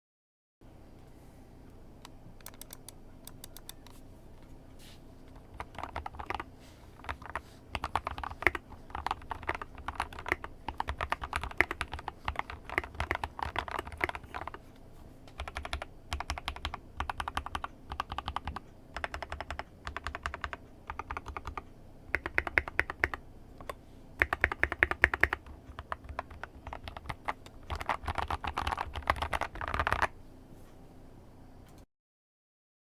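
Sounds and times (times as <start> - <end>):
mechanical keyboard typing: 2.4 - 4.0, 5.4 - 14.6, 15.3 - 30.2.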